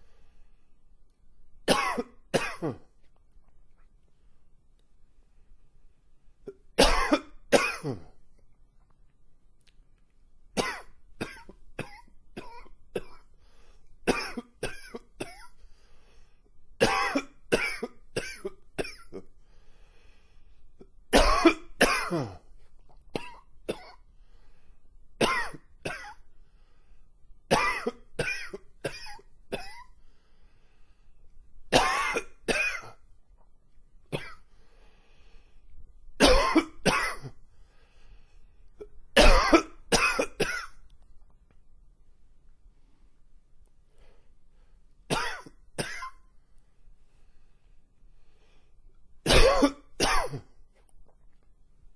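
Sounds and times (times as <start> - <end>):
man coughing: 1.7 - 2.9, 6.8 - 8.2, 16.8 - 19.2, 21.2 - 22.4, 36.2 - 37.3, 39.2 - 40.7, 45.1 - 46.2, 49.3 - 50.5.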